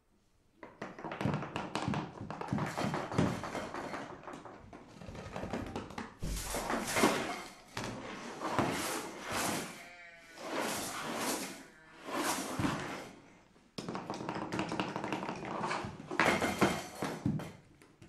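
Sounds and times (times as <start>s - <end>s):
foley taps and knocks: 0.6s - 8.0s, 13.8s - 18.0s
heavy thud: 6.2s - 7.0s.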